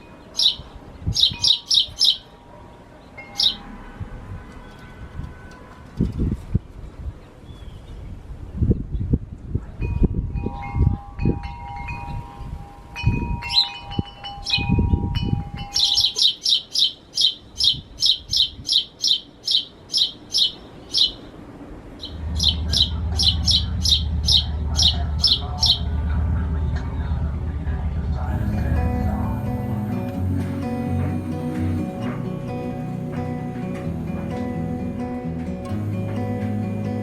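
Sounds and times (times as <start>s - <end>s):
wind chimes ringing: 0.0s - 2.0s, 3.2s - 3.7s, 9.8s - 16.4s
bird chirping high: 0.0s - 2.4s, 3.2s - 3.7s, 15.6s - 21.4s, 22.0s - 25.9s
low steady hum: 26.0s - 37.0s
low thumps: 28.3s - 37.0s.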